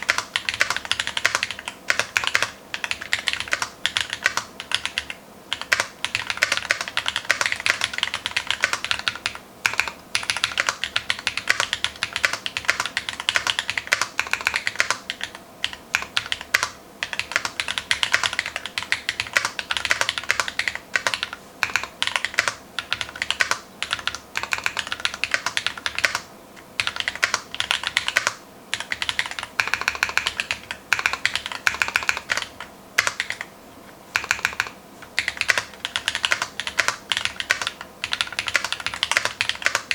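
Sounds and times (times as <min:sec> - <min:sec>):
fast typing on mechanical keyboard: 0:00.0 - 0:33.5, 0:34.2 - 0:39.9.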